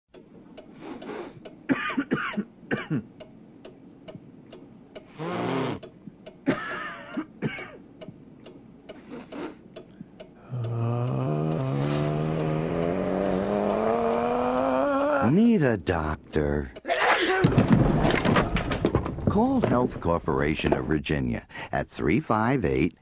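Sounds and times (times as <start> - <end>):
faint regular ticking: 1.4 - 5.2, 5.8 - 16.9.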